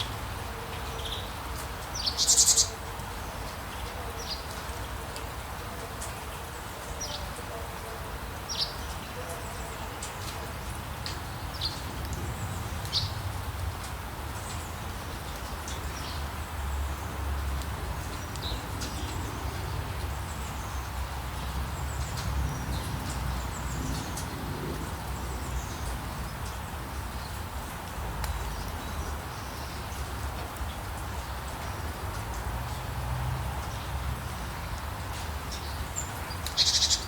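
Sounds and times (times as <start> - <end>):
light rain hissing: 0.0 - 37.0
birds chirping: 17.7 - 27.4.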